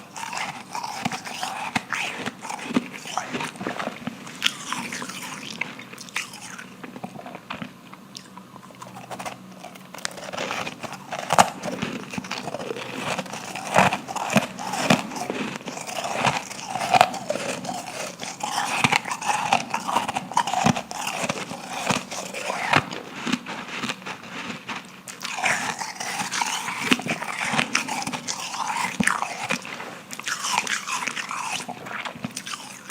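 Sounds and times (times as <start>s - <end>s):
ice being chewed: 0.0s - 32.9s.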